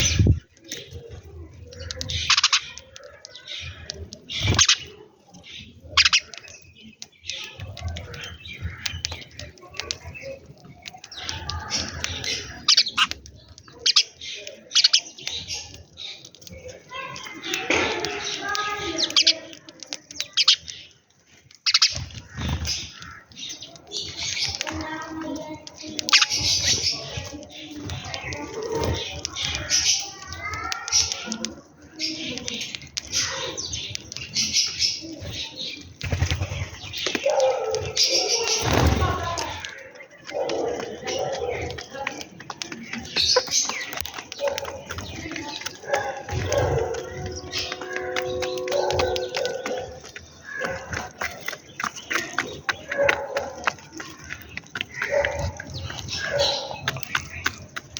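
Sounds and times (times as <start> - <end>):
sparrows chirping: 0.0 - 57.9.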